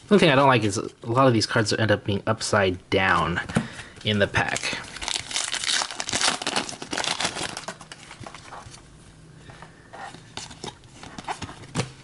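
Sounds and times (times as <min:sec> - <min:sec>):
card pack wrapper crinkling: 0:04.3 - 0:08.8.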